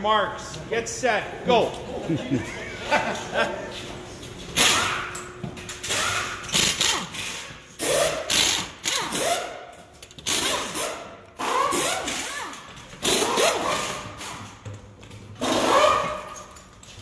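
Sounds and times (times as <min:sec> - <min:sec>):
impact wrenches rattling: 0:04.5 - 0:17.0.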